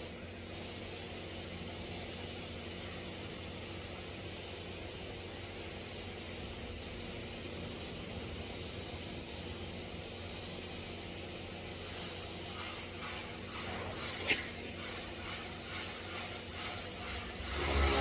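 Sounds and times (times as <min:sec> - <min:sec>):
welding arc hissing: 0:15.8 - 0:18.0.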